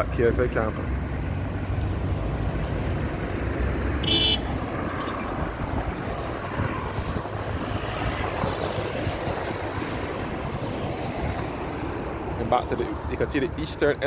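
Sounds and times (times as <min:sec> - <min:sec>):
road traffic: 0:00.0 - 0:14.0.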